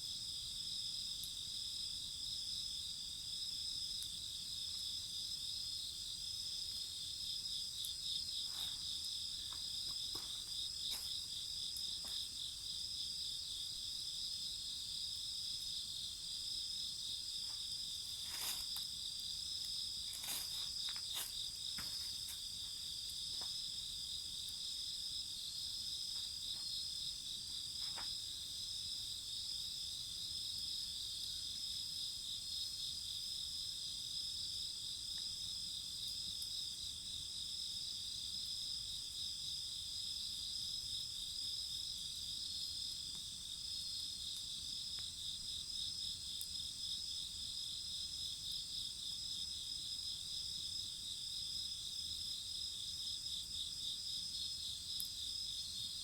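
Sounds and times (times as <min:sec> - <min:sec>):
crickets chirping: 0:00.8 - 0:56.0
wood fire crackling: 0:07.7 - 0:13.8, 0:16.8 - 0:28.7.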